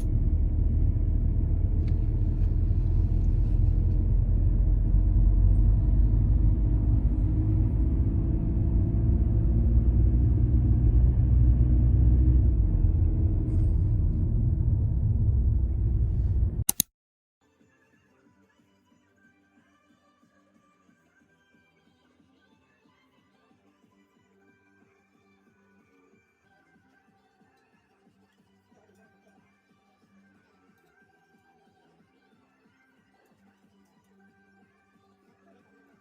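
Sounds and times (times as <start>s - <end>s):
car engine and road noise: 0.0s - 16.8s.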